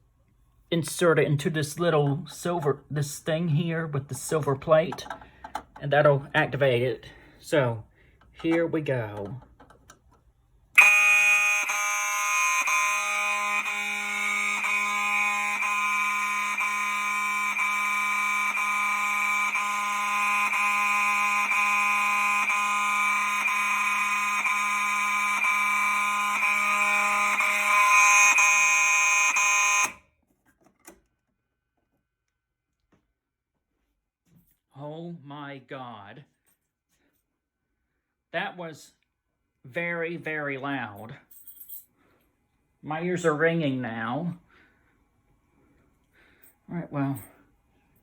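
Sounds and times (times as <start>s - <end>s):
loud electronic fire alarm horn: 10.8s - 30.1s.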